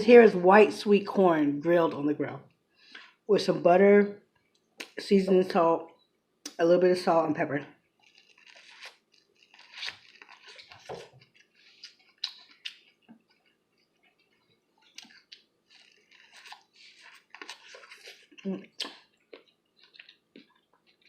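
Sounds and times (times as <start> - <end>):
biting and chewing corn: 8.0 - 21.0.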